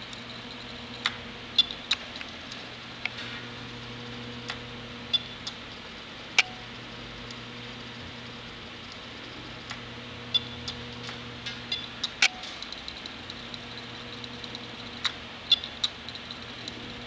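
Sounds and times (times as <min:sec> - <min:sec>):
laptop low hum: 0:00.0 - 0:17.0
laptop sharp irregular clicks: 0:00.1 - 0:03.2, 0:06.4 - 0:06.7, 0:08.8 - 0:16.8.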